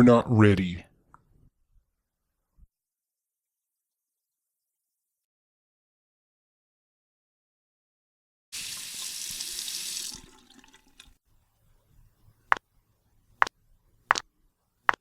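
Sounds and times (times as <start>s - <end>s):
water tap running: 8.6s - 11.2s.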